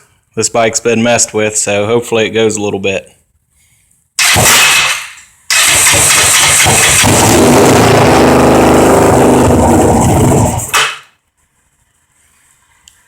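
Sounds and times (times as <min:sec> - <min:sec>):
electric starter cranking: 0:04.2 - 0:11.0
motorcycle engine running: 0:05.5 - 0:10.7.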